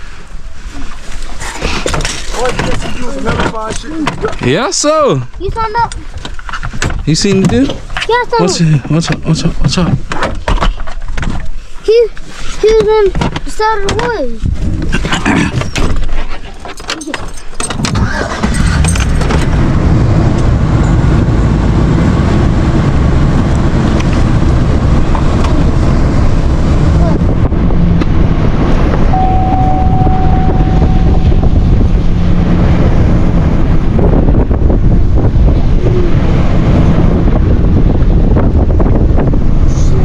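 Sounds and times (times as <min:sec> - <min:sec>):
truck engine and road noise: 0:00.0 - 0:40.0
wind buffeting microphone: 0:12.6 - 0:40.0
steady tone: 0:29.0 - 0:34.0.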